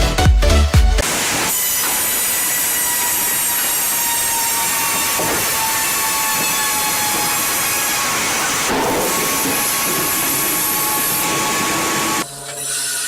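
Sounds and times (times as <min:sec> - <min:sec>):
electronic dance music: 0:00.0 - 0:01.1
hissing machine with whine: 0:01.0 - 0:13.0.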